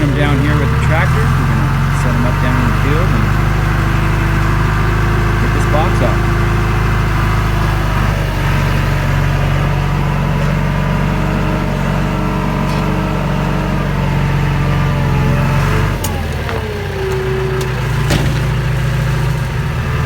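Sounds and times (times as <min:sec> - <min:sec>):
tractor engine running: 0:00.0 - 0:20.0.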